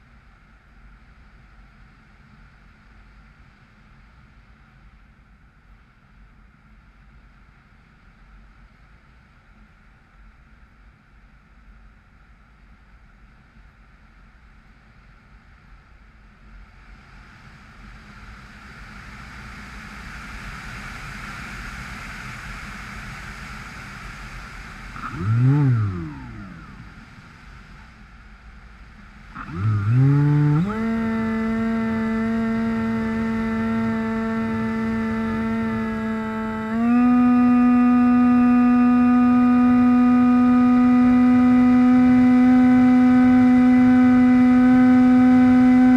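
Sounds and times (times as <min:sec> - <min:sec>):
electric motor and propeller whine: 0:22.6 - 0:45.9.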